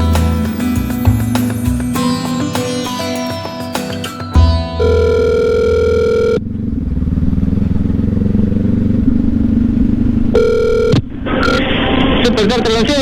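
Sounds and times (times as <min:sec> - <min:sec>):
telephone ringback tone: 0:04.7 - 0:06.4, 0:10.4 - 0:11.7.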